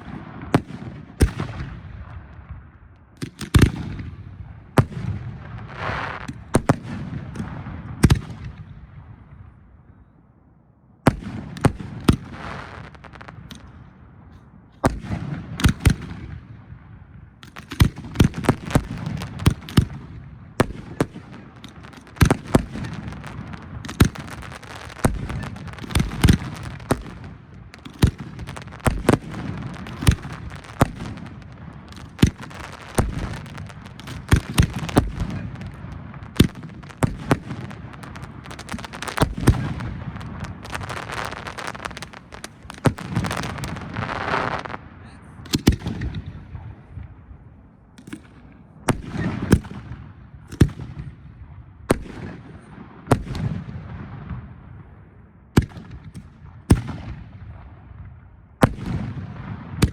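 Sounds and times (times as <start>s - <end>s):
fireworks exploding: 0.0s - 9.6s, 11.1s - 47.4s, 48.0s - 54.9s, 55.6s - 59.9s
fireworks crackling: 4.8s - 6.8s, 11.6s - 13.7s, 17.4s - 45.9s.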